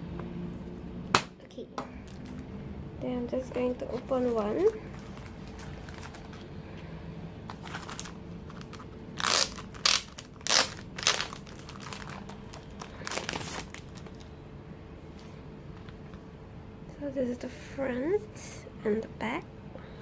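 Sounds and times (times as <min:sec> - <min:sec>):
packaging crinkling: 0:02.0 - 0:02.4, 0:03.9 - 0:06.8, 0:07.4 - 0:14.3.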